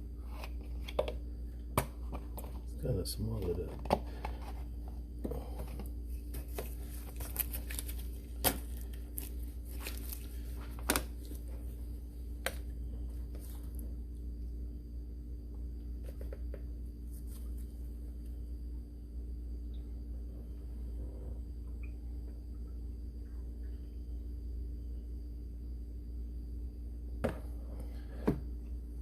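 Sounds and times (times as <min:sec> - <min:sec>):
steady low hum: 0:00.0 - 0:29.0.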